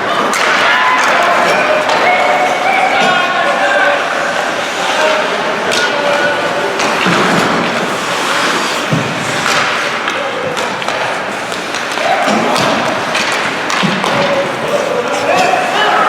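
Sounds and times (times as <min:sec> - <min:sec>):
spectators chattering: 0:00.0 - 0:16.0
thuds and knocks of play: 0:10.5 - 0:15.6.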